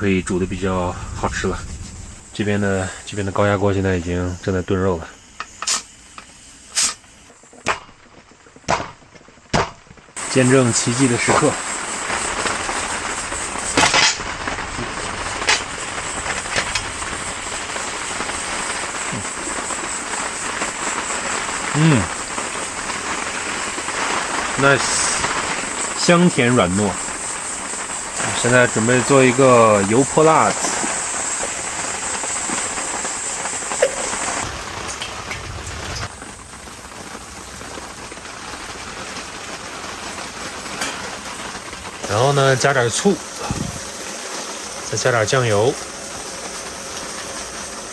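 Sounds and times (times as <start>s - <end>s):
rain pattering on a tent: 0.0s - 6.2s, 7.3s - 47.9s
steady rushing hiss: 0.0s - 47.9s
metal lid scrape and clatter: 40.7s - 41.2s.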